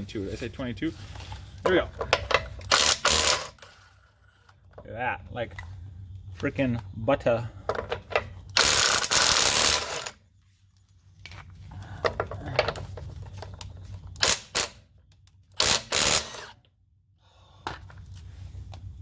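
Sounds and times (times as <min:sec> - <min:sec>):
tool handling clicks and knocks: 0:01.2 - 0:03.7, 0:07.6 - 0:08.6, 0:11.2 - 0:14.2.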